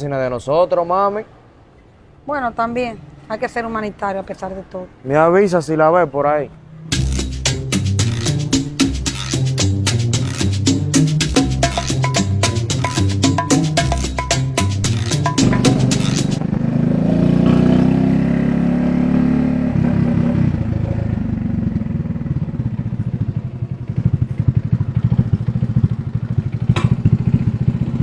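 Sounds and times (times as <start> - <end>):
motorcycle engine idling: 15.4 - 16.9, 20.7 - 28.0.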